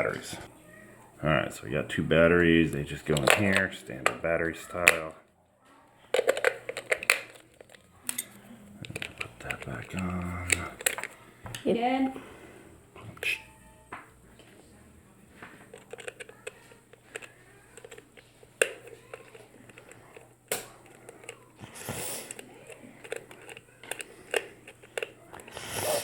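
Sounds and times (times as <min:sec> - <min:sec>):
plastic clicks: 0:03.0 - 0:04.2, 0:04.8 - 0:05.1, 0:06.1 - 0:11.7, 0:15.6 - 0:25.6
plastic packaging rustling: 0:06.0 - 0:11.3.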